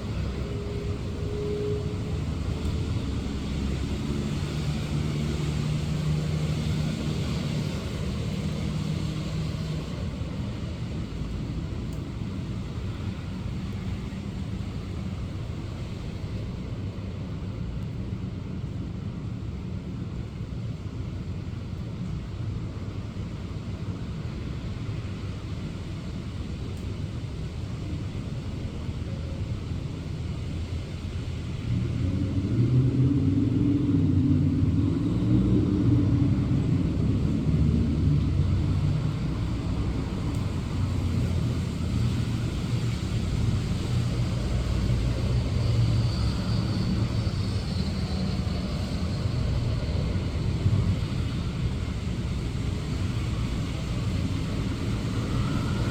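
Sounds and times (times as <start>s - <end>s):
traffic rumble: 0.0s - 55.9s
vehicle engine and tyre rumble: 0.0s - 55.9s
rain hiss: 23.0s - 55.9s.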